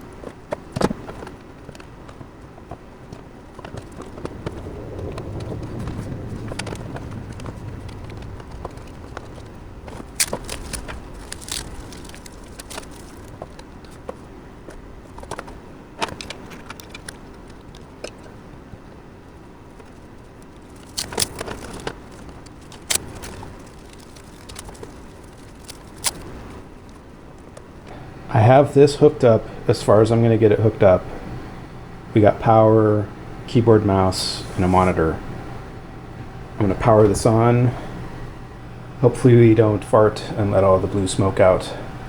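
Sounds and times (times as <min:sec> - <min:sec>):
cables and connectors clicking: 0:03.6 - 0:18.3, 0:19.8 - 0:32.8.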